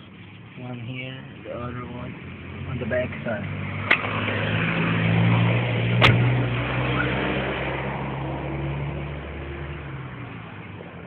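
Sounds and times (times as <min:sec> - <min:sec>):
vehicle engine passing: 0:01.5 - 0:11.0.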